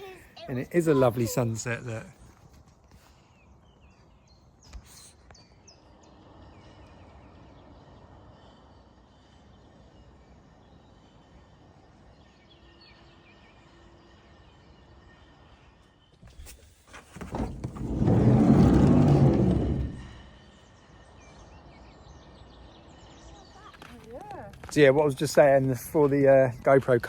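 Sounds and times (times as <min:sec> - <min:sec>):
birds chirping: 0:00.0 - 0:02.2, 0:17.3 - 0:27.0
faint outdoor hum: 0:00.0 - 0:27.0.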